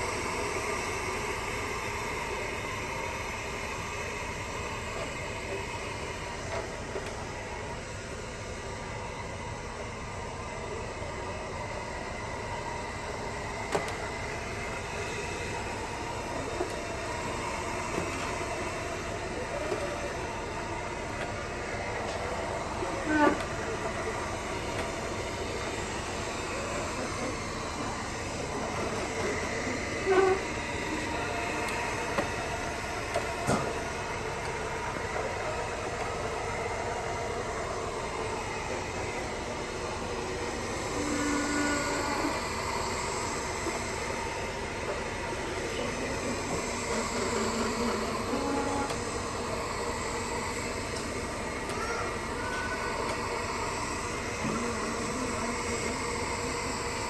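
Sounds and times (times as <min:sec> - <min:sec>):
robot vacuum whirring: 0:13.6 - 0:57.0.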